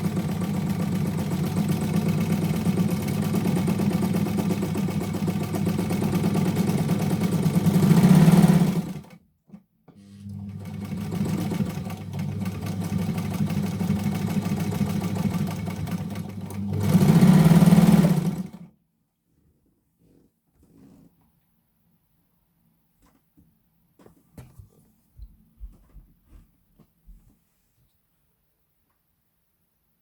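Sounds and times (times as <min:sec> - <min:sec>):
sewing machine stitching: 0:00.0 - 0:09.2, 0:10.0 - 0:18.7.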